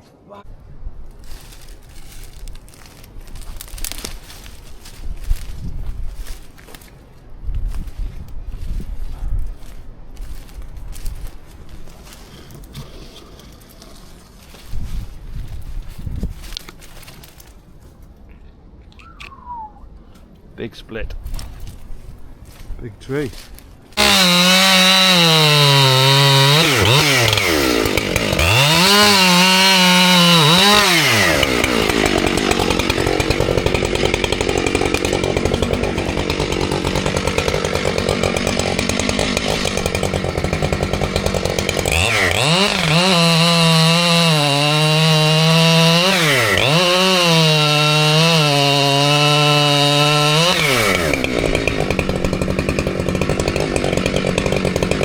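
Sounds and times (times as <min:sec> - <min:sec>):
chainsaw cutting wood: 0:10.9 - 0:14.7, 0:23.9 - 0:55.0.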